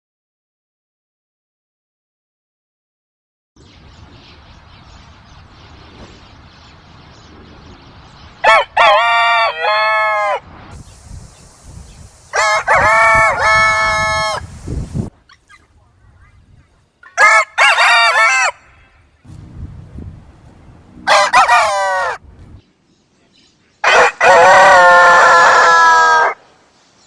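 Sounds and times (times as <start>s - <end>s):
rooster crowing: 8.4s - 10.4s, 12.3s - 14.5s, 17.1s - 19.0s, 21.0s - 22.2s, 23.8s - 26.4s.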